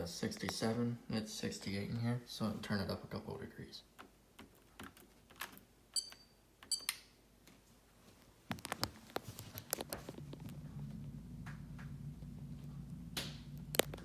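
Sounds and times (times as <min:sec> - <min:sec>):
low steady hum: 0:05.8 - 0:14.0.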